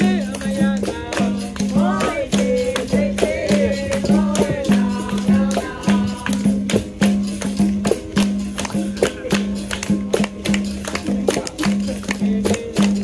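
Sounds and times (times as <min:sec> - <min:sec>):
voices singing: 0:00.0 - 0:07.2
berimbau playing: 0:00.0 - 0:13.0
shaker rattle: 0:00.0 - 0:13.0
sharp percussion strikes: 0:00.0 - 0:13.0.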